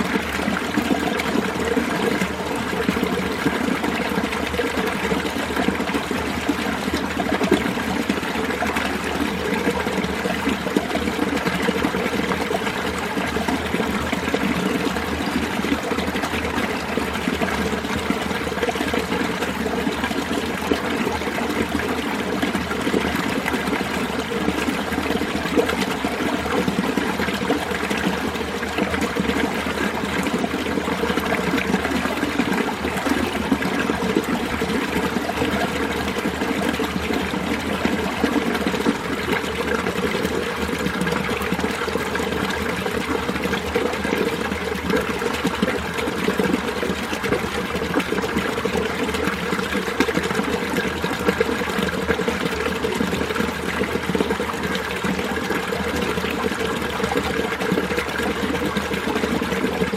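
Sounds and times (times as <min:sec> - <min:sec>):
stream flowing: 0:00.0 - 0:59.9.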